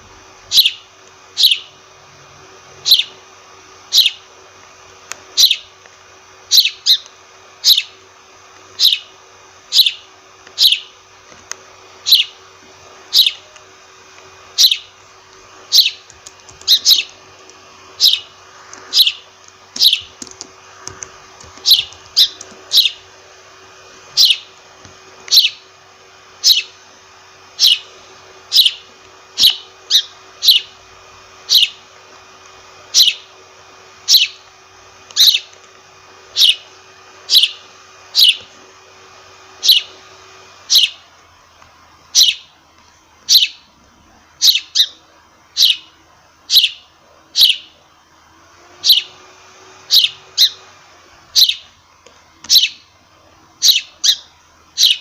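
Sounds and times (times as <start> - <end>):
sparrow chirping: 0.5 - 1.7, 2.8 - 3.2, 3.9 - 4.3, 5.3 - 5.7, 6.5 - 8.0, 8.7 - 9.1, 9.7 - 11.0, 12.0 - 12.4, 13.1 - 13.5, 14.5 - 15.0, 15.7 - 17.2, 18.0 - 20.2, 21.5 - 23.1, 24.2 - 24.6, 25.3 - 25.7, 26.4 - 26.8, 27.6 - 30.8, 31.4 - 31.8, 32.9 - 33.3, 34.0 - 34.5, 35.2 - 35.5, 36.3 - 36.7, 37.3 - 38.5, 39.6 - 40.0, 40.6 - 41.0, 42.1 - 42.5, 43.3 - 43.7, 44.4 - 45.9, 46.5 - 47.8, 48.8 - 49.2, 49.8 - 50.7, 51.4 - 51.7, 52.5 - 52.9, 53.6 - 55.0.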